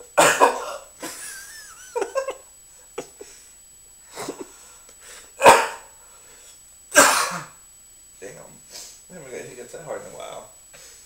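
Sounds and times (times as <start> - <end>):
man hiccuping: 0.2 - 0.9, 5.4 - 5.9, 6.9 - 7.6
breathing: 3.2 - 6.6, 10.7 - 11.0.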